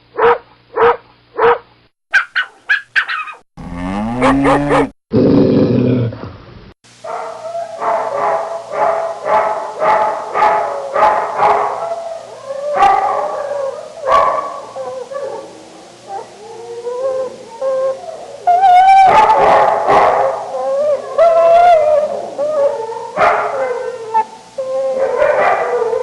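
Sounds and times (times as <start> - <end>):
dog barking: 0.2 - 3.4, 4.2 - 4.9, 7.0 - 11.9, 12.8 - 13.3, 14.1 - 14.6, 19.0 - 20.4, 23.2 - 23.6, 25.0 - 25.8
dog howling: 7.2 - 8.2, 10.4 - 26.0.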